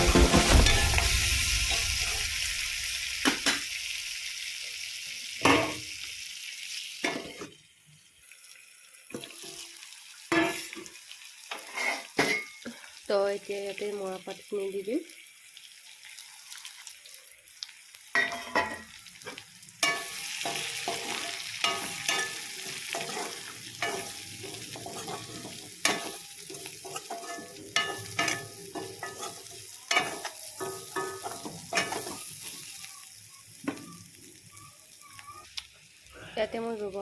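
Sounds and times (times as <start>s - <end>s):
leaves sizzling in hot oil: 0.0s - 37.0s
spatula scraping a pan: 11.5s - 12.4s, 18.3s - 32.7s.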